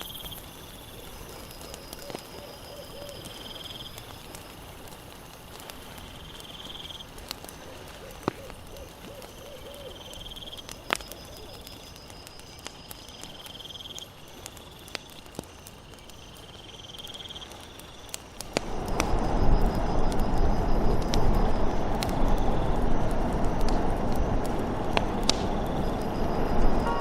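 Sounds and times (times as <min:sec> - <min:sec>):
campfire crackling and popping: 0:00.0 - 0:27.0
insect chirping trill: 0:00.0 - 0:27.0
low wavering call: 0:26.8 - 0:27.0.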